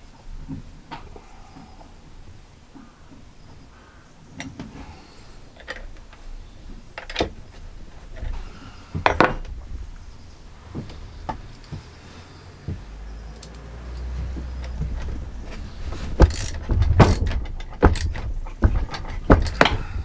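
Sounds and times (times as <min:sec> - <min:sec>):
metal tools clinking and knocking: 0:13.3 - 0:20.0.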